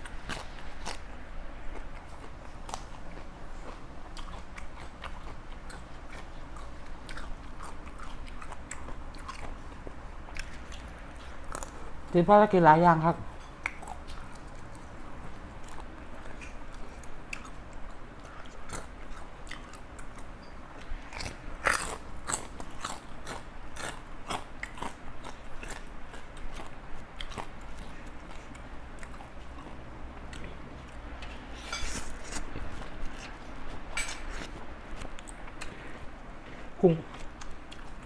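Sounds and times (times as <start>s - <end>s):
person chewing crunchy food: 0.0s - 12.1s, 13.3s - 38.0s.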